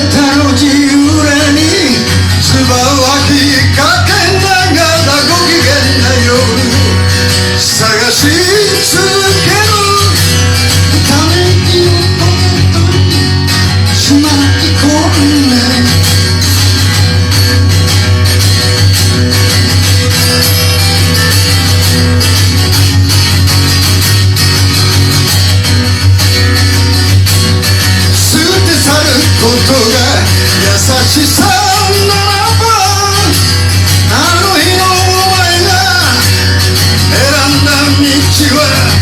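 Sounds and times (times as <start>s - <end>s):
person singing: 0.0s - 16.2s, 28.1s - 39.0s
band playing with guitar: 0.0s - 39.0s.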